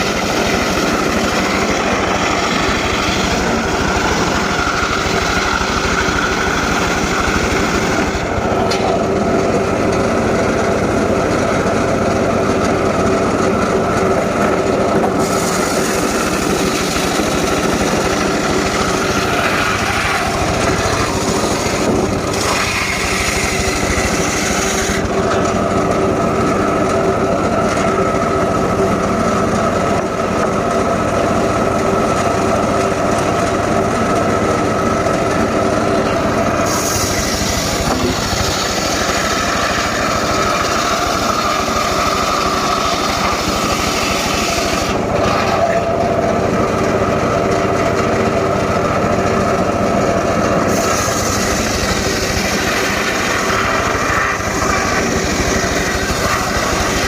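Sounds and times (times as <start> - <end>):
saw cutting wood hiss: 0.0 - 9.6, 15.0 - 25.7, 35.3 - 46.0, 50.4 - 57.0
engine-powered saw running: 0.0 - 57.0.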